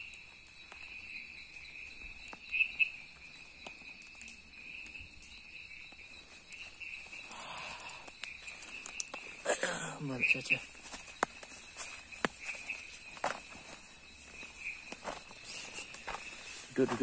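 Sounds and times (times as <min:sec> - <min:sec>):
crickets trilling: 0:00.0 - 0:17.0
loud insect chirps: 0:00.0 - 0:17.0
faint clicks: 0:07.9 - 0:09.3.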